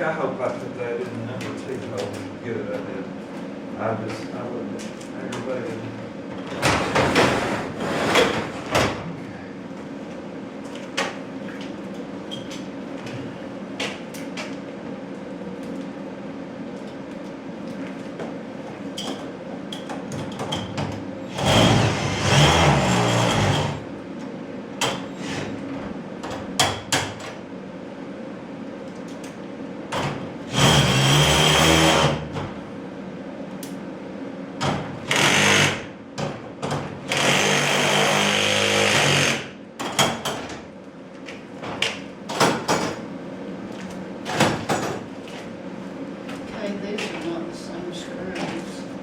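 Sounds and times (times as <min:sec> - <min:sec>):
power drill driving screws: 0:21.3 - 0:23.8, 0:30.5 - 0:32.2, 0:35.1 - 0:35.8, 0:37.1 - 0:39.4.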